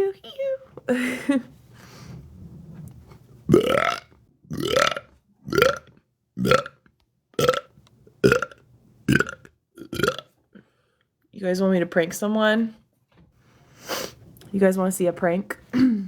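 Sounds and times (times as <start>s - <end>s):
woman burping: 3.5s - 5.8s, 15.7s - 16.0s.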